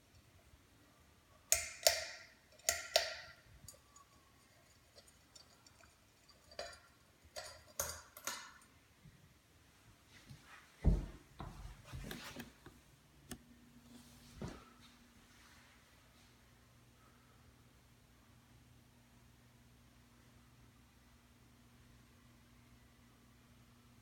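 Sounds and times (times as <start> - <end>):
ceiling fan clicking: 1.5 - 8.8.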